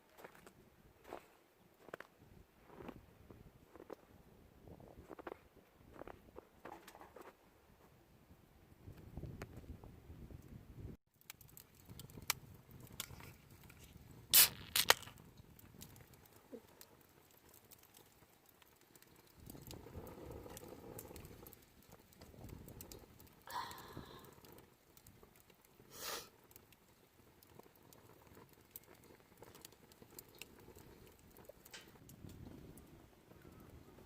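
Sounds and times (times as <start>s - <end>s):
handling clicks and crinkling: 11.2s - 23.4s.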